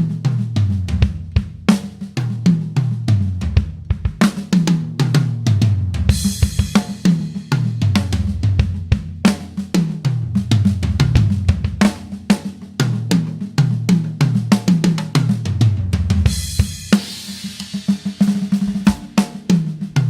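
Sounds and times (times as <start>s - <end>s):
drum kit beat: 0.0s - 20.0s
tom fills: 16.2s - 19.5s.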